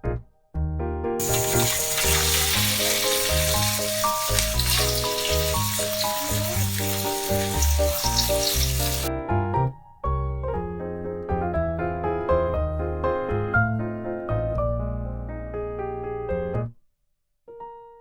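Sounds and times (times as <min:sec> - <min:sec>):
piano music: 0:00.0 - 0:16.7
food sizzling: 0:01.2 - 0:09.1.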